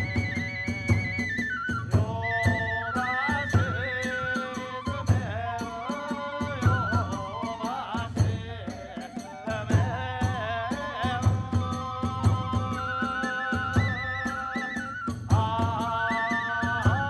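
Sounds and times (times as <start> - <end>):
bamboo flute melody: 0.0 - 17.0.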